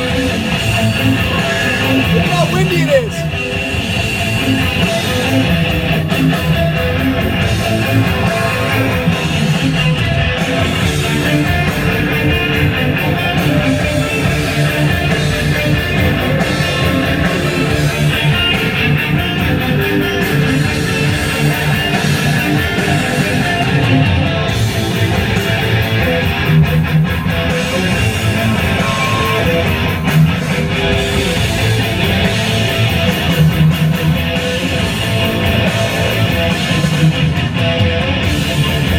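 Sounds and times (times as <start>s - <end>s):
rock music with loud guitar: 0.0s - 38.9s.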